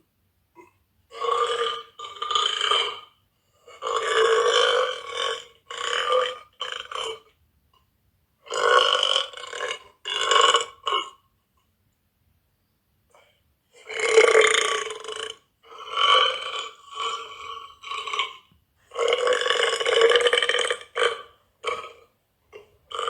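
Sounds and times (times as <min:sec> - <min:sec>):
girl burping loudly: 0:15.7 - 0:23.0.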